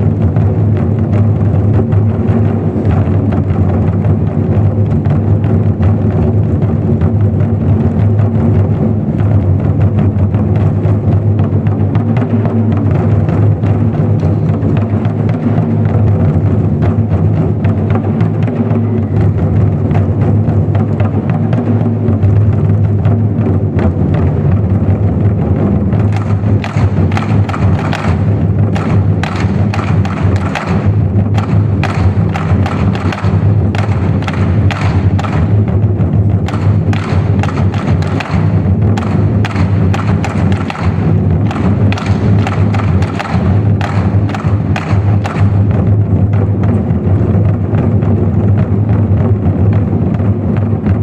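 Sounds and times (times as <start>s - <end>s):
large drums beating fast: 0.0s - 51.0s
sharp clicking strikes: 11.7s - 16.5s, 25.9s - 47.9s.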